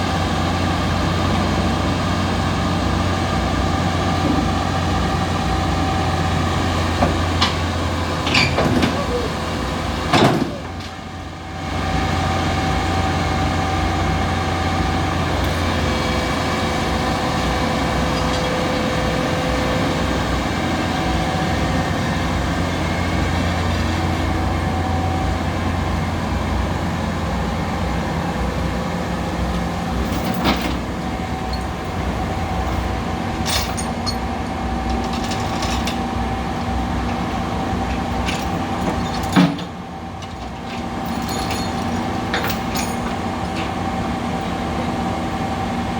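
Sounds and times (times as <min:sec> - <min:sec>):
excavator engine running: 0:00.0 - 0:45.9.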